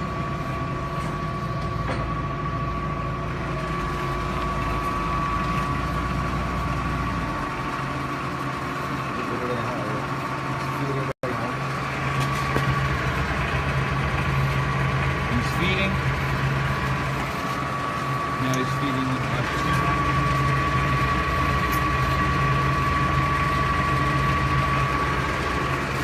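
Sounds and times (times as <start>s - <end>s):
lathe gear whine: 0.0s - 26.0s
low motor hum: 0.0s - 26.0s.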